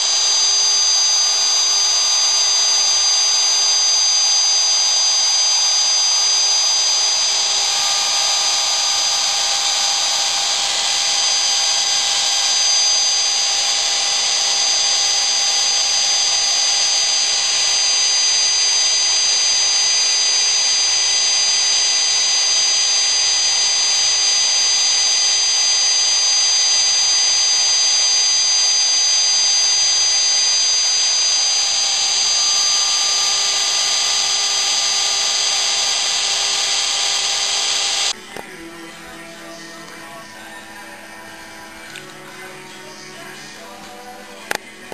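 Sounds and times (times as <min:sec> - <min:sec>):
fainter tones: 0:00.0 - 0:44.9
router motor high whine: 0:00.0 - 0:44.9.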